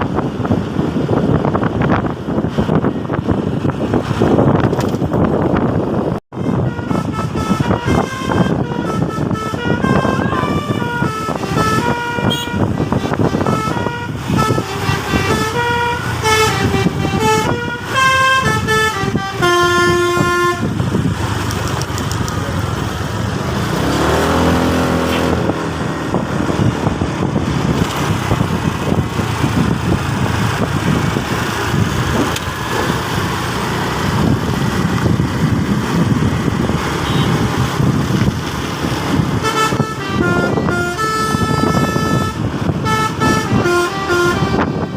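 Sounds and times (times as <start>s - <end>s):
steady vehicle noise: 0.0s - 44.9s
bus horn melody: 6.3s - 20.9s, 37.0s - 37.5s, 39.1s - 44.9s.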